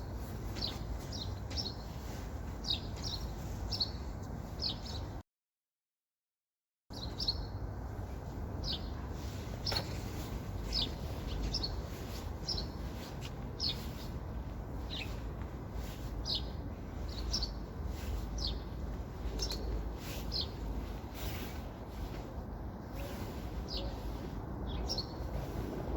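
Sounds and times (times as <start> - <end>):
steady low rumble: 7.4 - 25.9
small bird chirping: 10.6 - 14.1, 14.8 - 20.6, 22.9 - 25.4.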